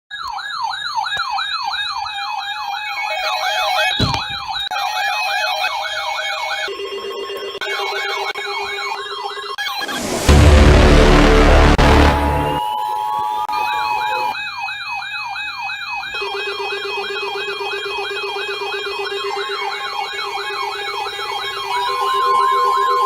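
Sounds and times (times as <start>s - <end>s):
sirens yelping: 0.1s - 23.0s
loud burst of noise: 9.9s - 12.6s
steady low tone: 10.3s - 12.6s.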